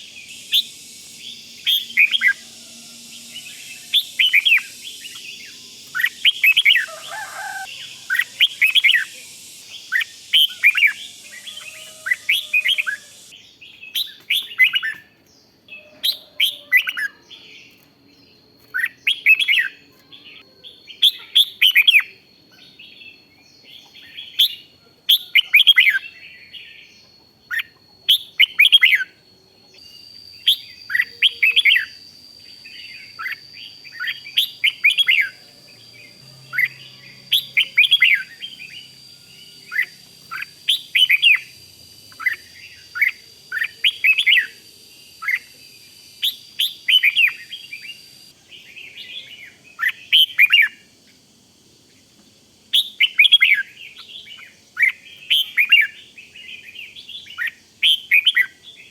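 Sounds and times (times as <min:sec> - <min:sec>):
bird warbling: 0:00.0 - 0:13.3, 0:30.5 - 0:44.6
faint high whine: 0:00.0 - 0:58.9.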